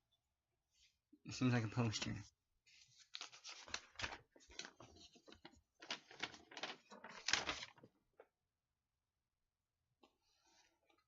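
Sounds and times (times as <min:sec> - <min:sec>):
paper rustling: 0:02.7 - 0:08.3.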